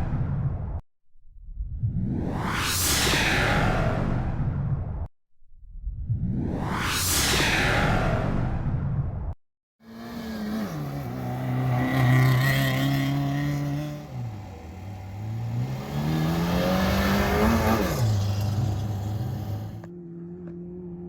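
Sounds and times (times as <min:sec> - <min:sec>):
racing engine revving: 0:09.9 - 0:21.0.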